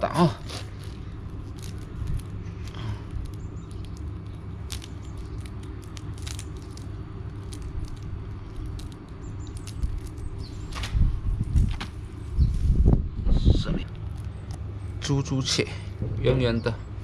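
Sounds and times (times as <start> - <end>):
steady low rumble: 0.0 - 17.0
fishing net clicks and rustles: 0.6 - 11.0.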